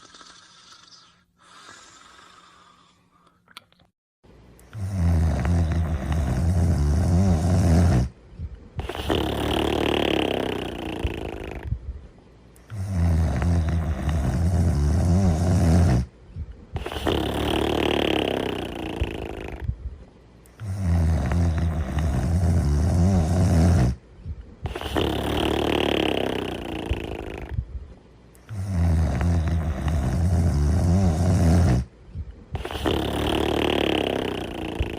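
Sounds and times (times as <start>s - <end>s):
loud rattling snore: 4.8s - 8.2s, 8.8s - 11.7s, 12.7s - 16.1s, 16.8s - 19.7s, 20.5s - 24.0s, 24.7s - 27.6s, 28.5s - 31.9s, 32.6s - 34.9s.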